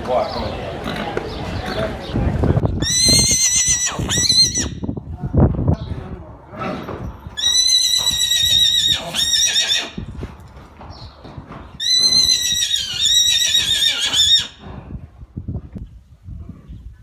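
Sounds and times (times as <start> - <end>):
horse whinnying: 2.8 - 4.8, 7.4 - 10.0, 11.8 - 14.6.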